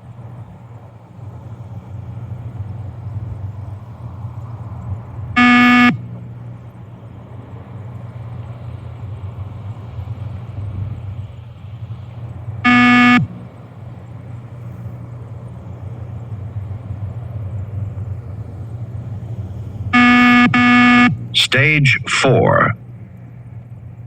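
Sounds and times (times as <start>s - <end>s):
steady low hum: 0.0s - 24.0s
loud electronic beep: 5.4s - 6.0s, 12.7s - 13.3s, 20.0s - 22.8s.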